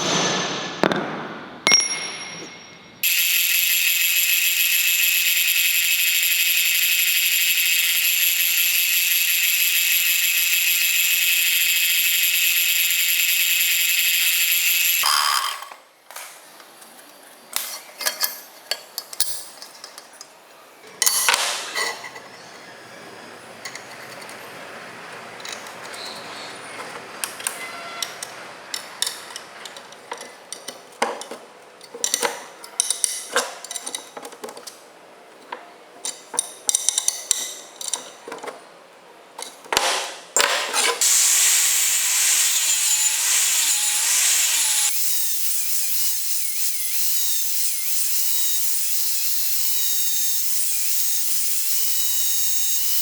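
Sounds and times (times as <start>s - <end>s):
power tool cutting metal: 3.0s - 15.7s, 41.0s - 53.0s.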